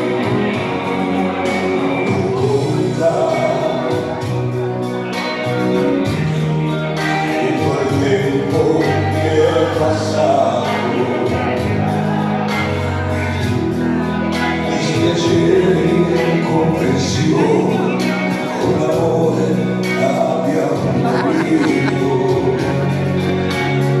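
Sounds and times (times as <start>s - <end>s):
dance music with singing: 20.0s - 23.1s.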